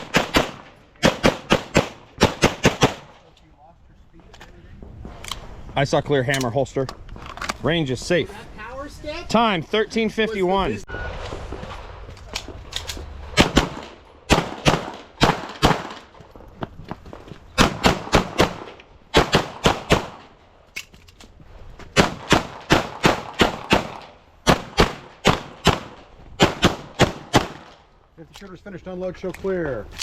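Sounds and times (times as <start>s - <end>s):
rapid pistol fire: 0.0s - 3.1s, 13.4s - 16.0s, 17.6s - 20.3s, 22.0s - 27.7s.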